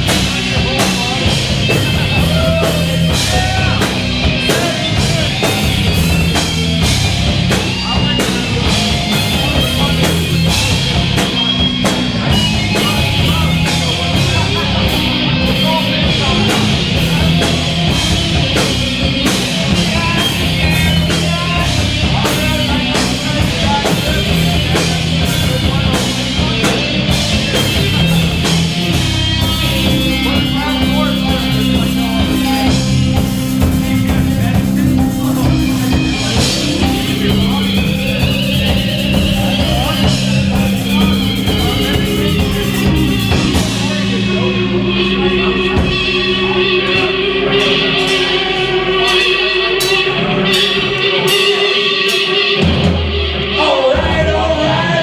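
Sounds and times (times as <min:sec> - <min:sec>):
live rock band playing: 0:00.0 - 0:55.0.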